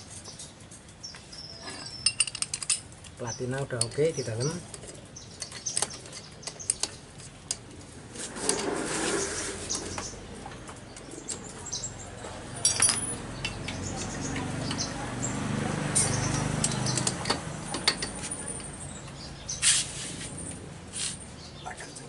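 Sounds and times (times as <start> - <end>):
birds chirping: 0.0 - 7.9, 9.0 - 22.0
small metallic clicks and taps: 16.0 - 19.2.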